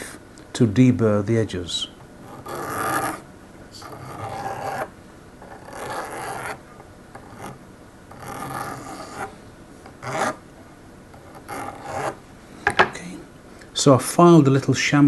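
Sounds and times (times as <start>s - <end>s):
hand file rasping on metal: 2.2s - 3.2s, 3.8s - 6.6s, 8.2s - 9.3s, 10.0s - 10.4s, 11.3s - 12.2s.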